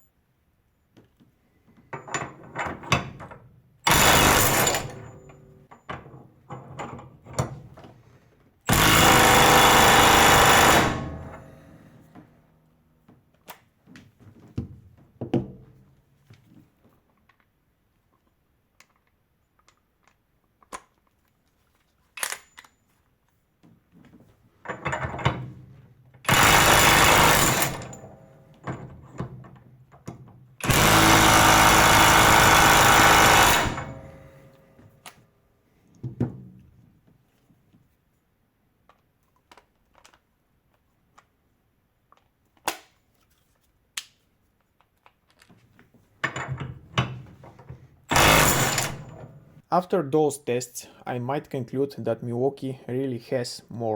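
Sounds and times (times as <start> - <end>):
impact wrench hammering on bolt: 8.7 - 11.4, 26.3 - 28.1, 30.6 - 34.4, 48.1 - 49.2
clicks and knocks of tools: 38.8 - 41.3.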